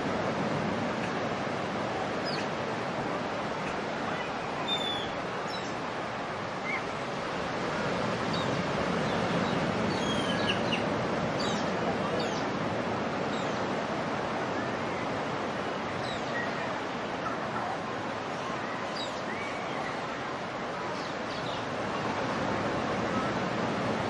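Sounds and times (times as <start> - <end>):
surf washing: 0.0 - 24.0
birds chirping: 4.2 - 5.8.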